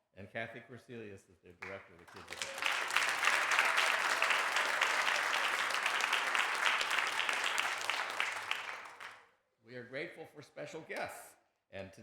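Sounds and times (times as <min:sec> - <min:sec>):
congregation applauding: 0:01.6 - 0:09.2.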